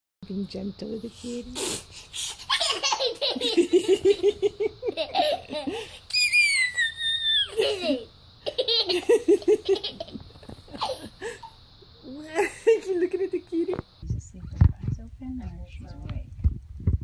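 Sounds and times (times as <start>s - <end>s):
baby laughing: 2.2s - 10.2s
baby squealing: 6.1s - 7.7s.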